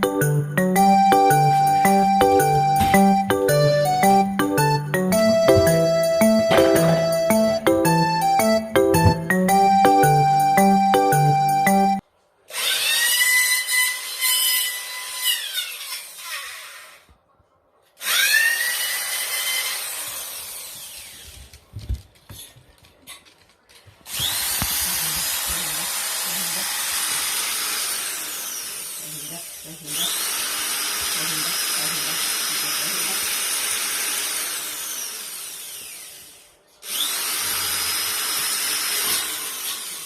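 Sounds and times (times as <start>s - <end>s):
knocks: 5.4s - 7.6s, 8.9s - 9.5s
power tool motor whine: 24.1s - 40.0s.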